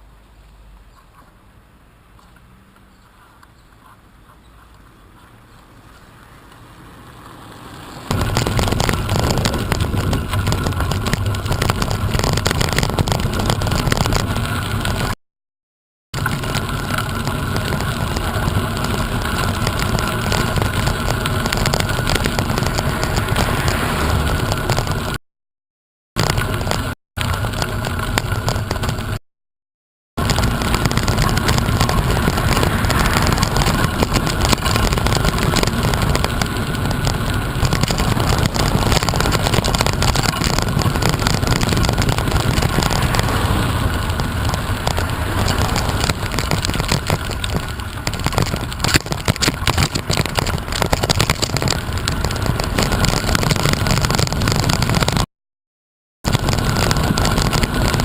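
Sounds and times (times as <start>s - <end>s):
rushing noise: 7.6s - 15.2s, 16.2s - 25.2s, 30.2s - 55.3s
wind buffeting microphone: 8.1s - 15.1s, 30.2s - 55.1s.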